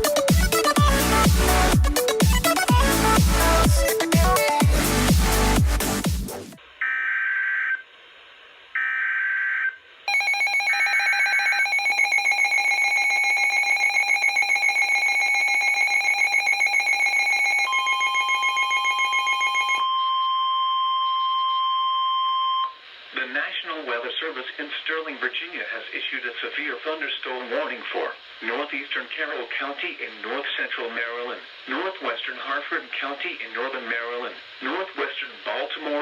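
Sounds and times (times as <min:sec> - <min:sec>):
pulsing alarm tone: 0:10.1 - 0:22.7
steady single-pitch tone: 0:10.1 - 0:22.8.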